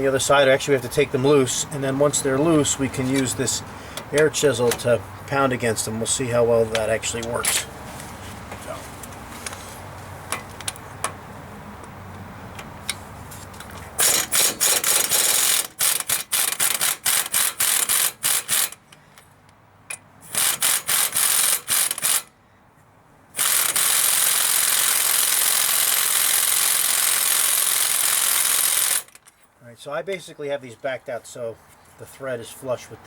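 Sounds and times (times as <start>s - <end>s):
air ratchet running: 14.0s - 19.0s, 19.9s - 22.4s, 23.4s - 29.2s.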